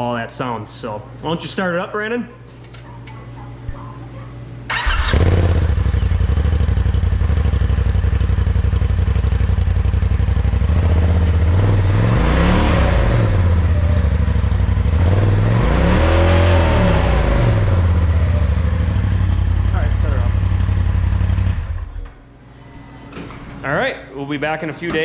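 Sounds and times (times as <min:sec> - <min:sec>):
engine starting and idling: 0:04.7 - 0:08.6
engine revving: 0:04.7 - 0:21.9.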